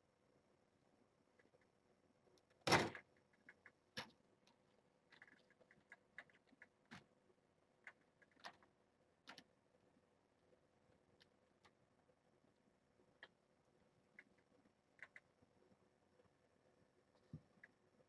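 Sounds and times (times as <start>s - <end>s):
kittens making faint taps and clicks: 1.3s - 9.6s, 13.0s - 16.4s, 17.0s - 18.0s.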